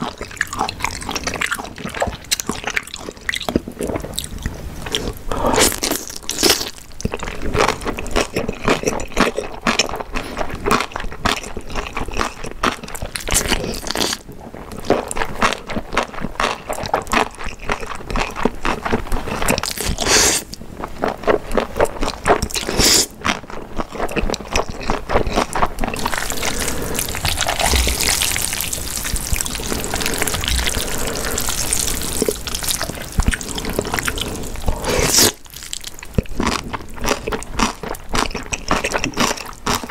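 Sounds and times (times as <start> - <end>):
wet chewing and slurping: 0.0 - 39.9
hissing wet sound: 26.0 - 35.4.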